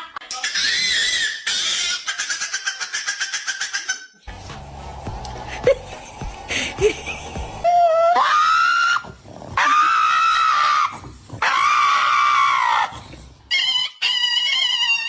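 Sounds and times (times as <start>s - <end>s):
dog screaming: 0.4s - 2.5s, 7.6s - 15.0s
high steady tones: 4.3s - 8.0s.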